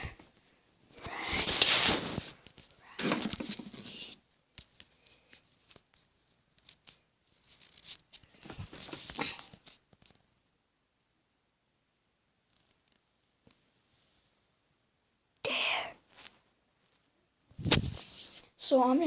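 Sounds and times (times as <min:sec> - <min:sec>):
rustling and clicking handling noise: 0:00.2 - 0:10.4, 0:12.5 - 0:13.6.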